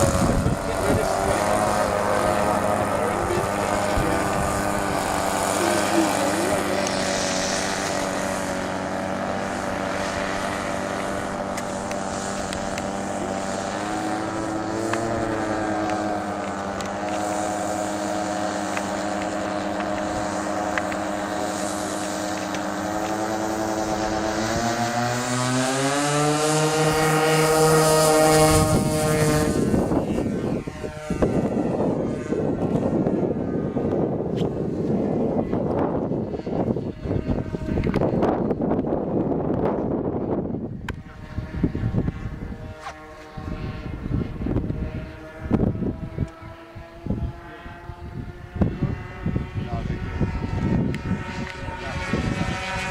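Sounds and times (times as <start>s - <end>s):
model plane engines buzzing: 0.0s - 52.9s
wind buffeting microphone: 0.0s - 52.9s.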